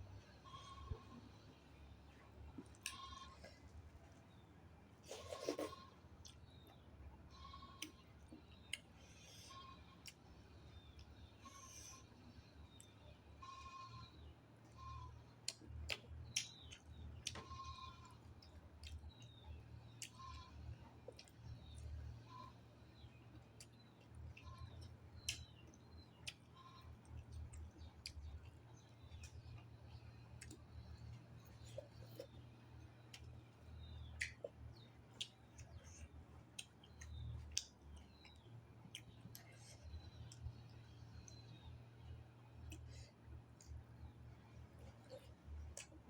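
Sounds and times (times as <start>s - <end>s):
faint low hum: 0.0s - 46.0s
chewing clicks and smacks: 2.1s - 3.3s, 5.1s - 6.8s, 7.4s - 11.4s, 12.5s - 13.1s, 14.8s - 46.0s
mouth clicks and lip smacks: 33.1s - 39.6s.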